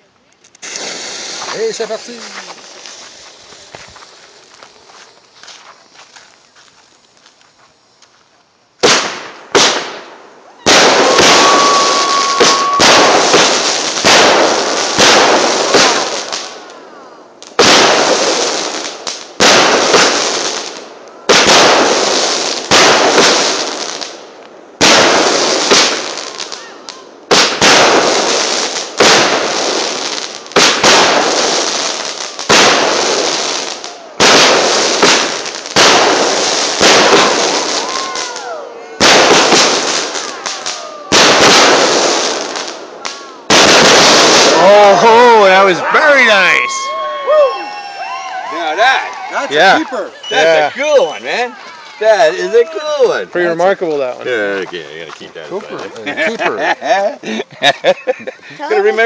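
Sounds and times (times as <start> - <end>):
firework whistle: 8.8 - 16.2, 43.7 - 52.5
firework cake bangs: 8.8 - 16.7, 17.5 - 24.2, 24.8 - 45.3.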